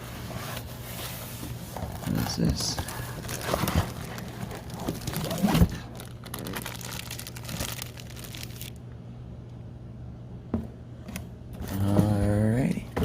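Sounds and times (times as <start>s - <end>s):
packaging crinkling and rustling: 1.6s - 8.8s.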